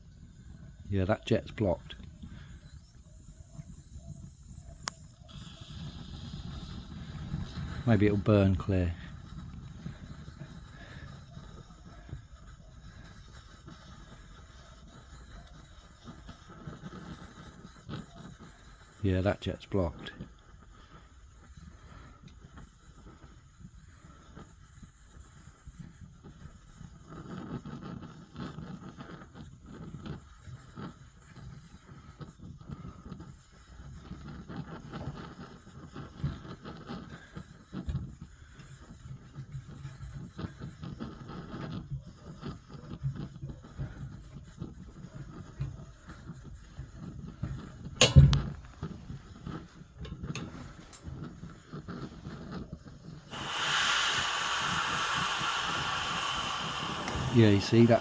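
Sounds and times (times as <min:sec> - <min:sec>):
pressure stove fluttering rumble: 0:00.0 - 0:58.0
loud steady hiss: 0:00.9 - 0:11.2, 0:53.2 - 0:58.0
sharp knock: 0:48.0 - 0:48.6.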